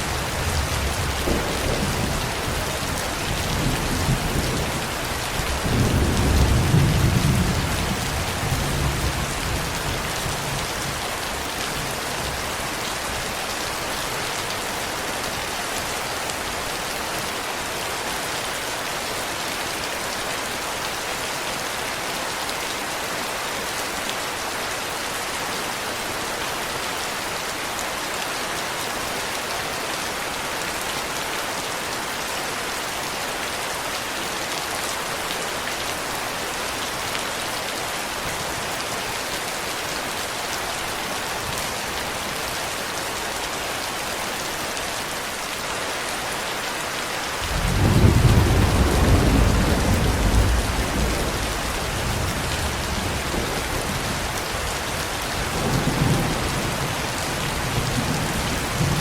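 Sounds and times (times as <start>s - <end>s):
rolling thunder: 0.4s - 9.3s, 47.4s - 54.2s
heavy rain hissing: 34.0s - 59.0s.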